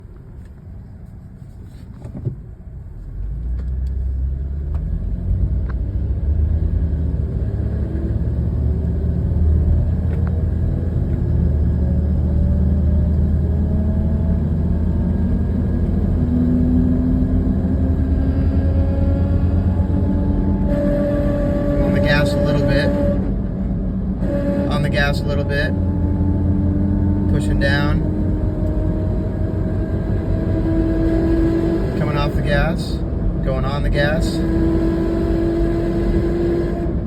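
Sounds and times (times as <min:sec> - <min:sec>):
low grinding buzz: 0:12.5 - 0:33.1
whine rising in pitch: 0:14.2 - 0:32.4.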